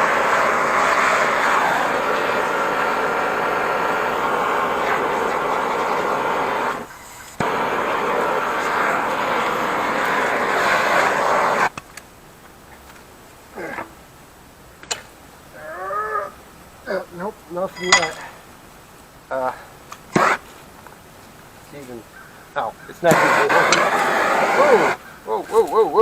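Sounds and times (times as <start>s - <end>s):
blowtorch hissing: 0.0s - 11.8s, 19.5s - 20.6s, 22.9s - 26.0s.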